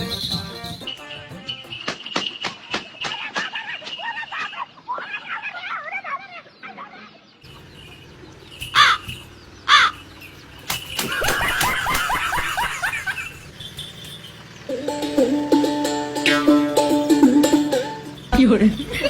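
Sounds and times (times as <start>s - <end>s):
loud bird calls: 0.0s - 14.9s.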